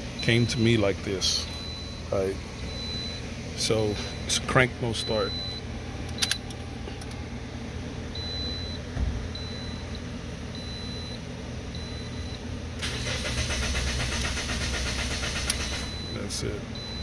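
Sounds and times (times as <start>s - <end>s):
high electronic beeps: 2.6s - 3.2s
starter cranking engine: 12.8s - 16.1s.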